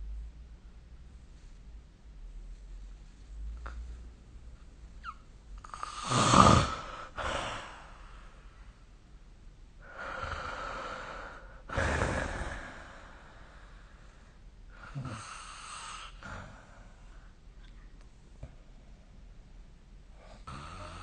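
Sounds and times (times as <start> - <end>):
person snoring: 5.6 - 8.0, 9.9 - 13.2, 20.3 - 21.0.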